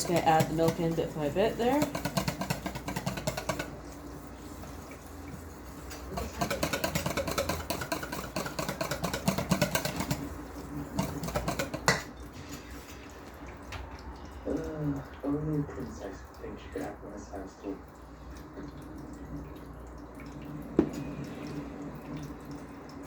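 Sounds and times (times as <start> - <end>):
whisk clicking against bowl: 0.0 - 12.1.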